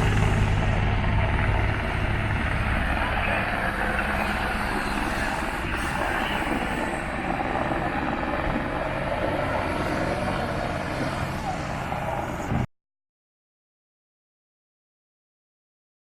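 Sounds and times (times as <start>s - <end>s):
steady engine noise pulsing: 0.0s - 12.7s.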